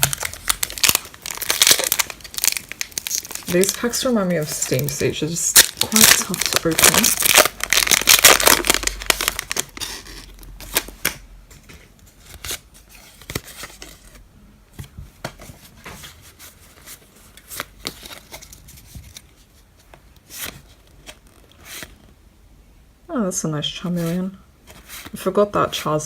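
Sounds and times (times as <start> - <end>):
foil wrapper tearing: 0.0 - 11.0
wrapper crinkling: 0.0 - 11.2.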